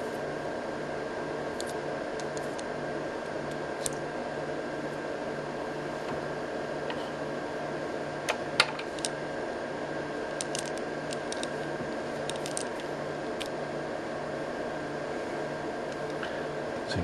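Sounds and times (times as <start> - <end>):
steady equipment hum: 0.0 - 17.0
clicks of small parts handled: 10.4 - 11.6, 12.2 - 13.5.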